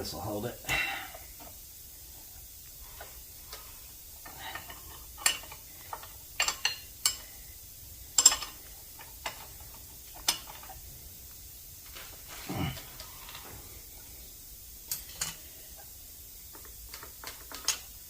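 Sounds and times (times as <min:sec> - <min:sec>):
metal parts knocking and clinking: 0:04.2 - 0:07.3, 0:08.1 - 0:10.7, 0:16.5 - 0:17.9.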